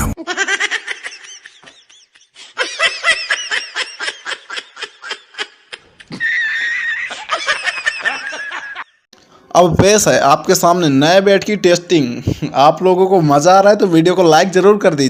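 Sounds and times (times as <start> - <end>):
high-pitched giggling laughter: 0.0 - 9.0.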